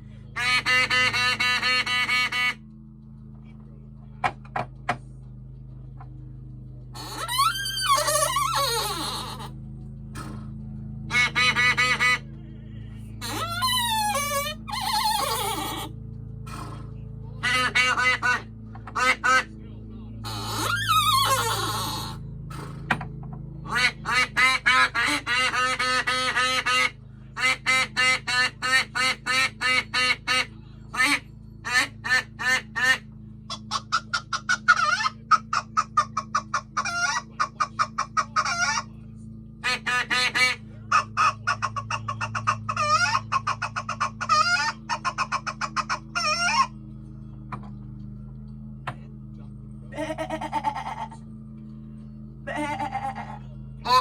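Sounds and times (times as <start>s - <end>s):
steady low hum: 0.0s - 54.0s
duck quacking: 0.4s - 2.6s, 11.1s - 12.2s, 13.2s - 15.9s, 17.4s - 19.5s, 23.7s - 38.9s, 39.6s - 46.8s, 49.9s - 51.2s, 52.5s - 54.0s.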